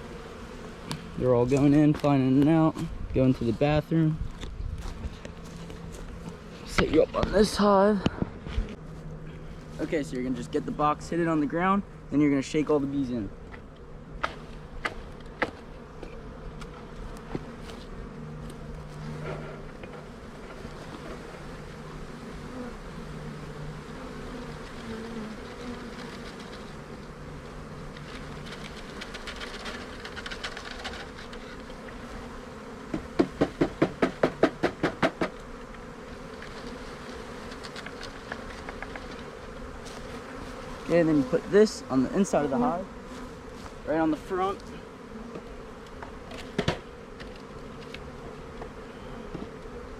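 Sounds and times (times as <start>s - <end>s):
bees buzzing: 0.0s - 49.9s
sharp knocks on a box: 32.9s - 35.4s, 46.5s - 46.9s.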